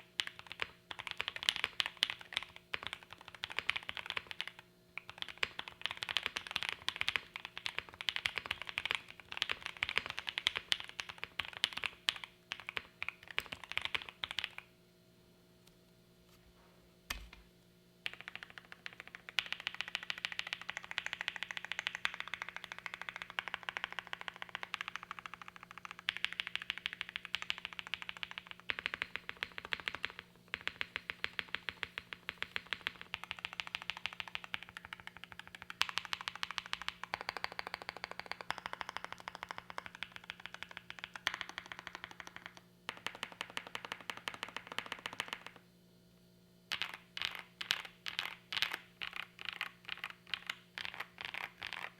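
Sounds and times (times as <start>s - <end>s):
fast mechanical keyboard typing: 0.0s - 14.7s, 18.0s - 45.6s, 46.7s - 51.9s.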